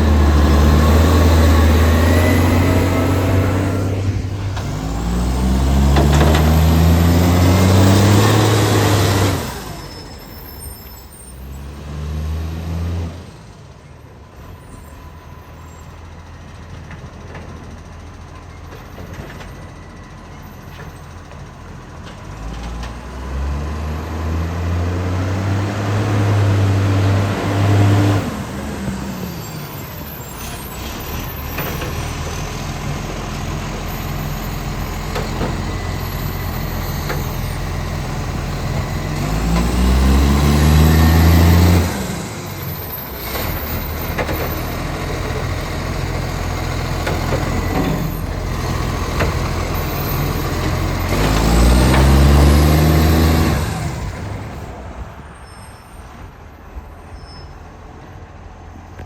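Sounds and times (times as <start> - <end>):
diesel truck engine revving: 0.0 - 13.6, 21.8 - 55.1.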